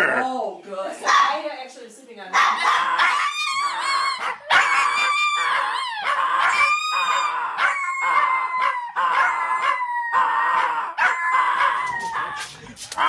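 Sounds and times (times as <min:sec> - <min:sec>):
small dog howling: 0:02.6 - 0:12.6.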